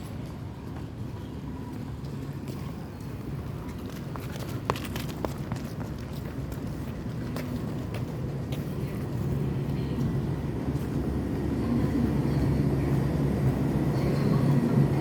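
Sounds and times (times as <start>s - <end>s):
low engine rumble: 5.8s - 15.0s.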